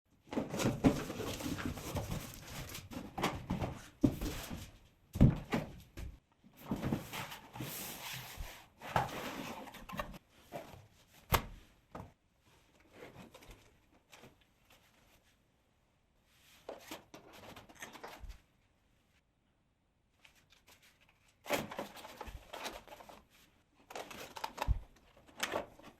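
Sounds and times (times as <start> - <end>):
handling knocks and thumps: 0.2 - 7.1
packaging rustling and scraping: 0.4 - 4.6.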